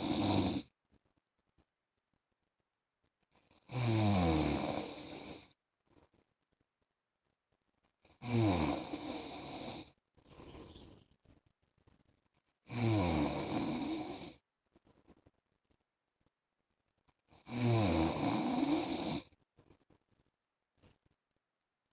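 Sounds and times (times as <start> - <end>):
man snoring: 0.0 - 0.7, 3.7 - 5.5, 8.2 - 9.9, 12.7 - 14.4, 17.4 - 19.3.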